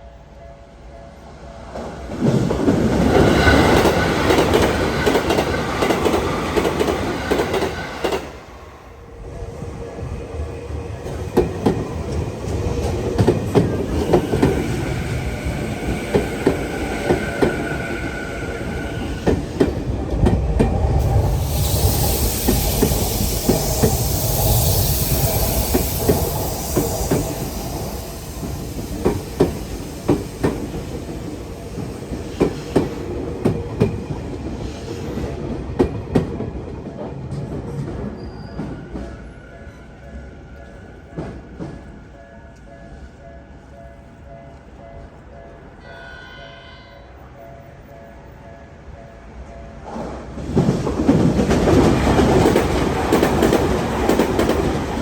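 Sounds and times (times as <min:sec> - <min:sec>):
electric trains passing: 0:00.0 - 0:55.0
wheels clacking over rail joints: 0:49.9 - 0:55.0.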